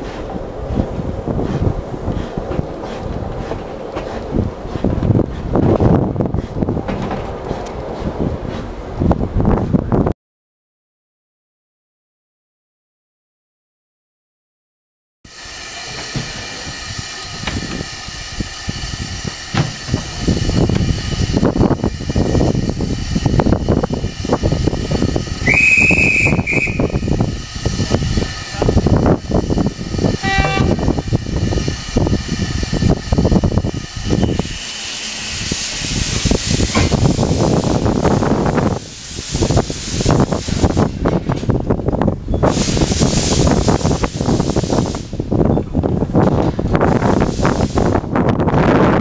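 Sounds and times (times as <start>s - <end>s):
steam locomotive exhaust beats: 0.0s - 10.1s, 15.3s - 49.0s
steam whistle blast: 25.4s - 27.2s, 30.2s - 30.9s.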